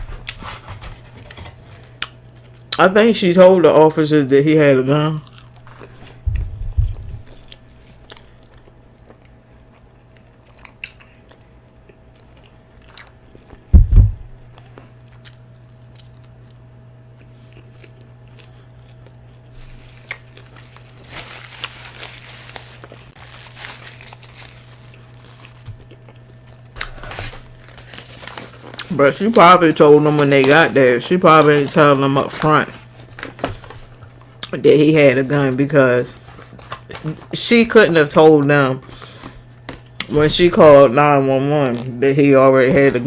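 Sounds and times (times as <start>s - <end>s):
low electrical hum: 0.0s - 43.0s
person chewing food: 0.1s - 2.8s, 5.2s - 13.7s, 14.3s - 28.9s
loud low thump: 13.8s - 14.4s
paper wrapper crinkling: 19.5s - 43.0s.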